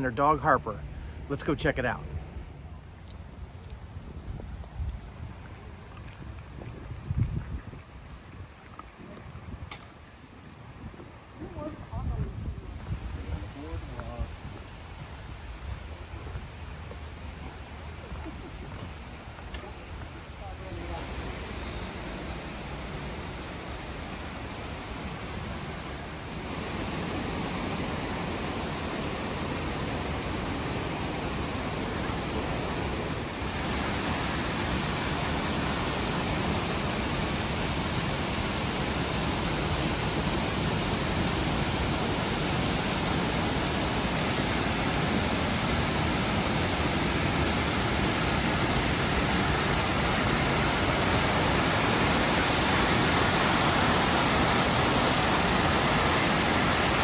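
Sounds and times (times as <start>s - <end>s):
waterfall rushing: 19.0s - 57.0s.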